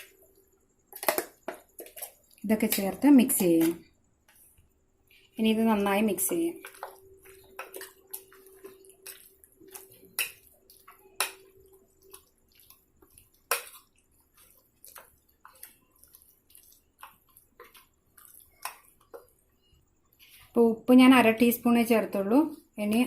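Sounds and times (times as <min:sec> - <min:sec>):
wet squelching of mixing meat: 0:05.3 - 0:20.6.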